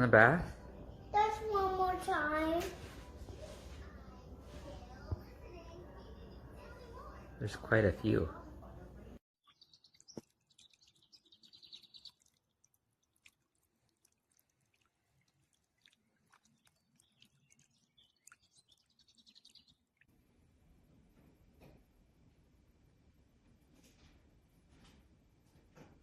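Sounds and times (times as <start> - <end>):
small birds chirping: 9.4 - 20.1.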